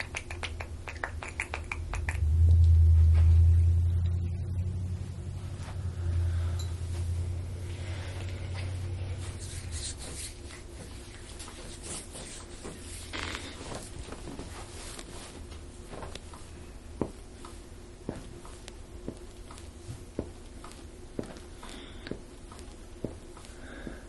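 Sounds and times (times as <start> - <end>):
low hum: 0.6 - 24.0
clothing rustling and shuffling: 5.1 - 24.0.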